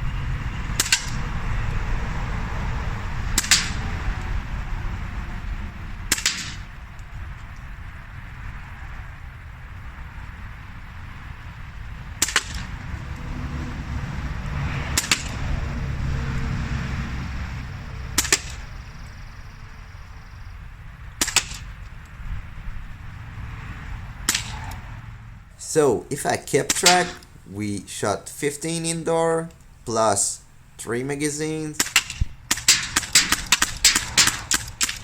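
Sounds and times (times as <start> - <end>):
low steady rumble: 0.0 - 35.0
pellet pistol shots: 0.8 - 1.2, 3.4 - 3.9, 6.1 - 6.7, 12.2 - 12.7, 15.0 - 15.4, 18.2 - 18.7, 21.2 - 21.7, 24.3 - 24.6, 26.6 - 27.3, 31.7 - 35.0.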